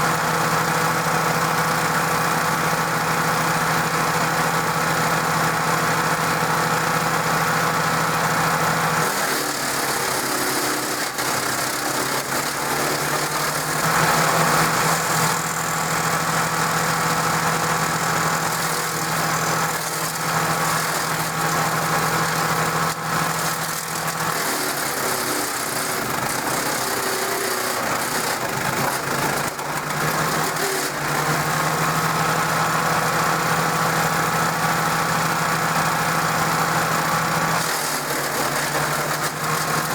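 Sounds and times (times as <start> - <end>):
wood chipper engine running: 0.0 - 39.9.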